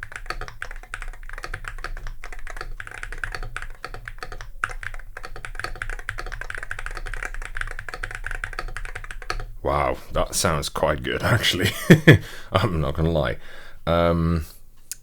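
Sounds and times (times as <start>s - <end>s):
fast keyboard typing clacks: 0.0s - 9.5s.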